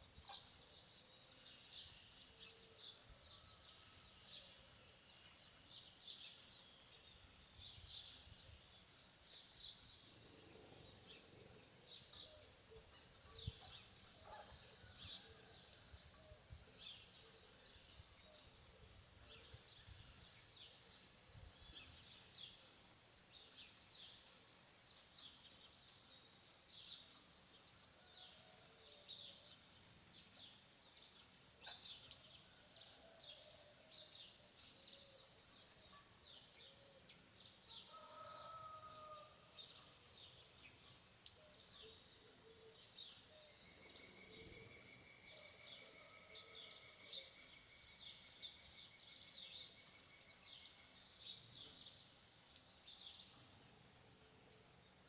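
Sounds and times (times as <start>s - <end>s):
small birds chirping: 0.0s - 28.6s, 29.4s - 32.6s, 34.0s - 55.0s.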